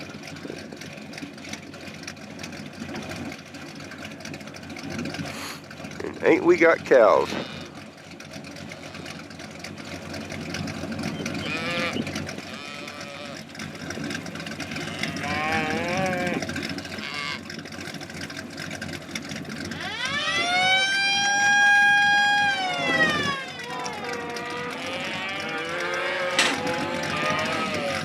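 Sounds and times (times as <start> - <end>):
truck engine rumbling: 0.0 - 28.0
cattle mooing: 6.2 - 7.8, 8.7 - 9.3, 11.3 - 13.5, 14.6 - 17.5, 19.7 - 28.0
high whine: 19.6 - 28.0.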